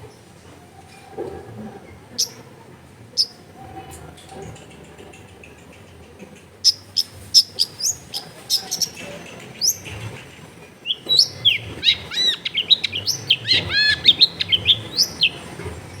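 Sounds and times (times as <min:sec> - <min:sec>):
bird chirping and whistling: 0:09.6 - 0:10.0, 0:10.8 - 0:16.0.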